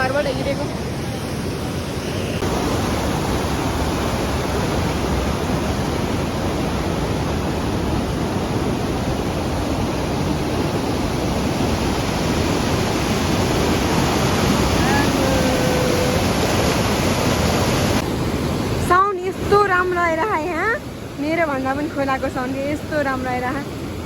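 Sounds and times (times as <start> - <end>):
river water rushing: 2.0 - 19.4.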